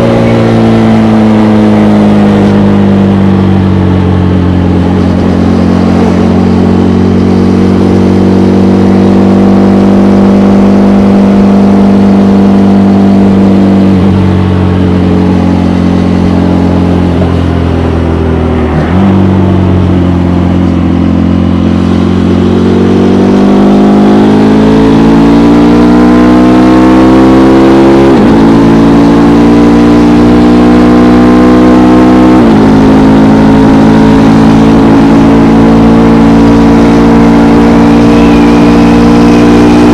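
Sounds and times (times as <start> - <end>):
quick upshifts: 0.0 - 9.4, 33.6 - 39.9
motorcycle engine revving: 0.0 - 39.9.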